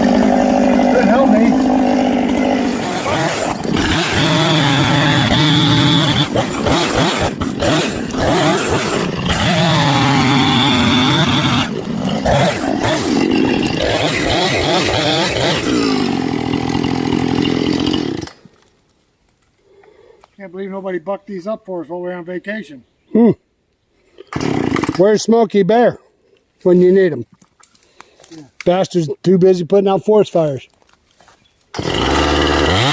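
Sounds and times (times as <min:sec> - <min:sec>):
chainsaw engine cutting: 0:00.0 - 0:18.6, 0:24.3 - 0:25.1, 0:31.8 - 0:32.9.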